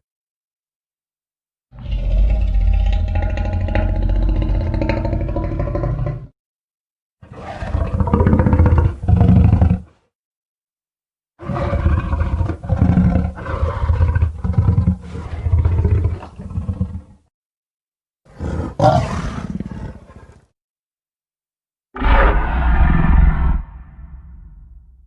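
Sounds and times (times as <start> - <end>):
monster roar: 1.8 - 6.3, 18.3 - 19.9, 22.0 - 24.8.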